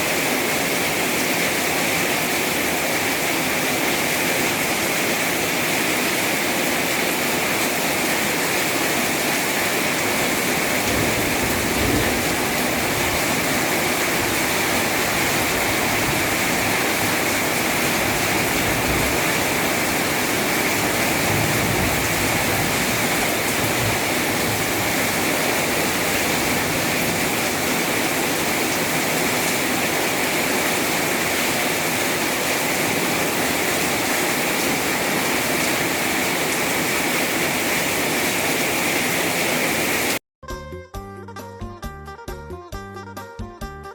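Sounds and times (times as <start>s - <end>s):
heavy rain pouring: 0.0s - 40.2s
low rumbling wind gusts: 9.1s - 40.2s.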